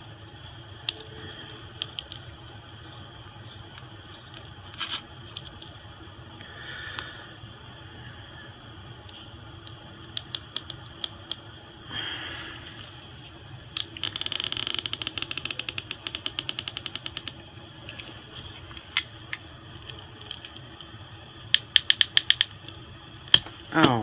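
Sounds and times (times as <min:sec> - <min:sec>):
small tools clicking: 0:01.8 - 0:02.2, 0:10.2 - 0:11.4, 0:13.8 - 0:17.4, 0:19.8 - 0:20.5, 0:21.6 - 0:22.6.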